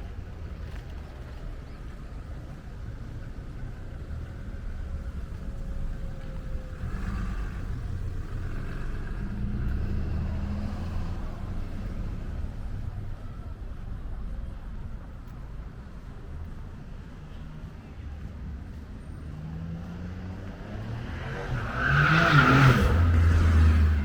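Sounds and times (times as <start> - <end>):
vehicle rumbling past: 4.3 - 13.4, 19.2 - 24.0.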